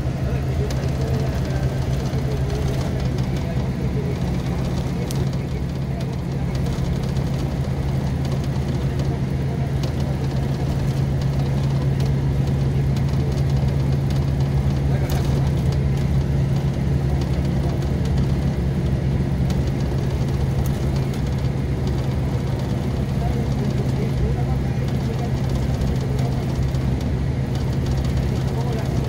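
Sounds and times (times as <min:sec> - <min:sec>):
diesel engine running: 0:00.0 - 0:29.0.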